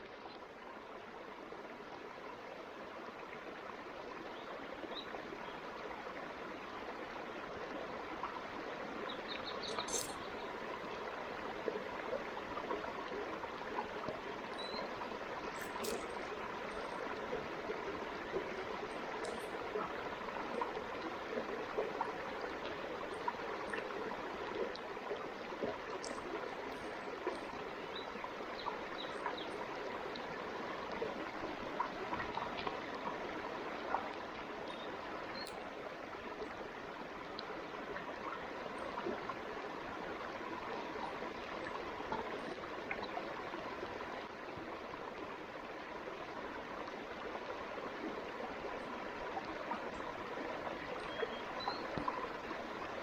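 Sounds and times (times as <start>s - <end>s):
stream running: 0.0s - 53.0s
small ticks: 9.4s - 10.3s, 15.5s - 17.1s, 19.0s - 19.5s, 25.6s - 27.6s.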